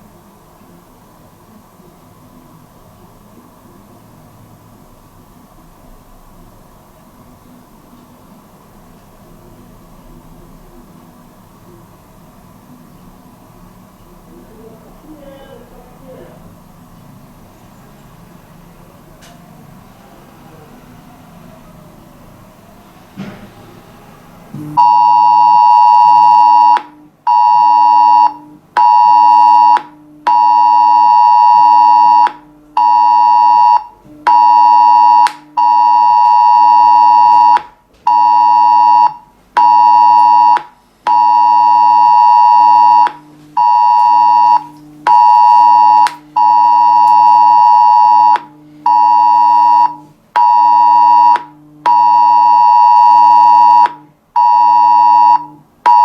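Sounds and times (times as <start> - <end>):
phone emergency alert tone: 24.8 - 56.0.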